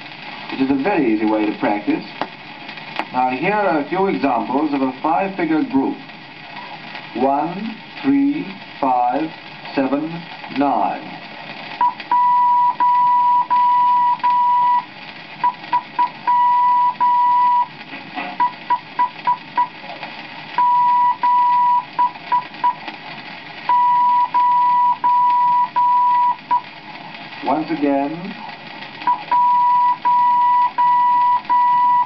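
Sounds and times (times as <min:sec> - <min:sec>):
record hiss: 0:00.0 - 0:32.0
morse code beeps: 0:11.8 - 0:17.7, 0:18.4 - 0:19.7, 0:20.6 - 0:22.8, 0:23.7 - 0:26.6, 0:29.1 - 0:32.0.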